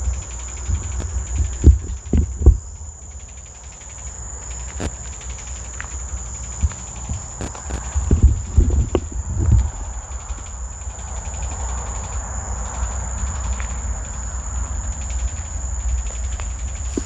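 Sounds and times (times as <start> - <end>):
high-pitched insect drone: 0.0 - 17.0
low rumble: 7.9 - 17.0.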